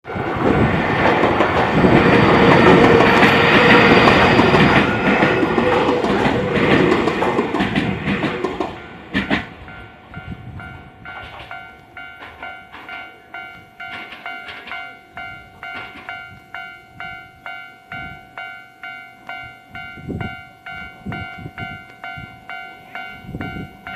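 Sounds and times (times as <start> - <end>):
electric train passing: 0.0 - 23.9
level crossing bell clanging: 2.0 - 23.9.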